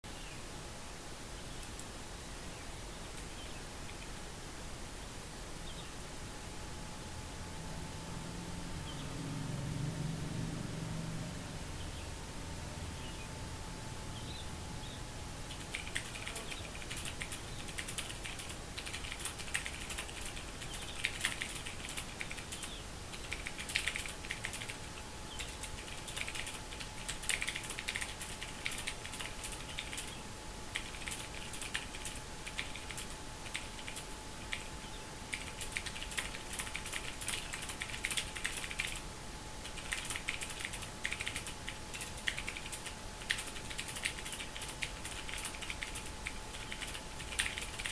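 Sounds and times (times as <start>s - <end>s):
mechanical keyboard typing: 15.5s - 34.7s, 35.3s - 39.0s, 39.6s - 47.9s.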